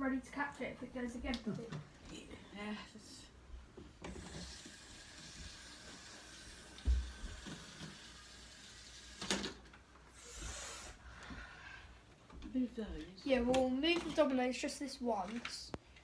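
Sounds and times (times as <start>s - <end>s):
model train motor whirring: 4.1s - 11.0s.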